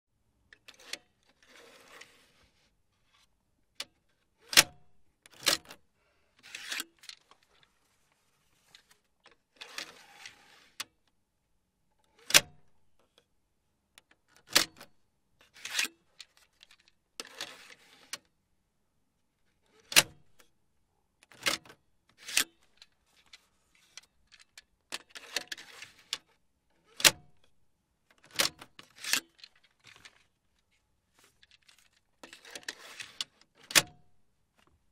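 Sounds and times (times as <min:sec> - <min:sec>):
cassette sliding in slot: 0:00.6 - 0:02.4, 0:09.6 - 0:10.9, 0:15.6 - 0:18.2, 0:21.3 - 0:26.3, 0:31.2 - 0:34.0.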